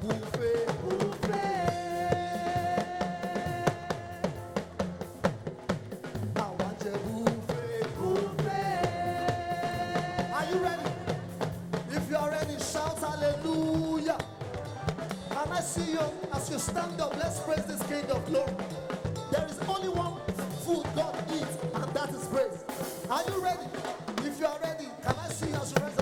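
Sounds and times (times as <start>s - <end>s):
drum kit beat: 0.0s - 26.0s
live band music: 0.0s - 26.0s.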